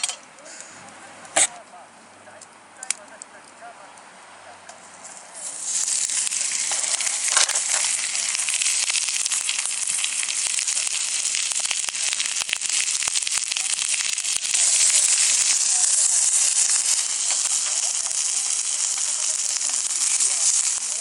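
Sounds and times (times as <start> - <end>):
food sizzling in a pan: 5.3 - 21.0.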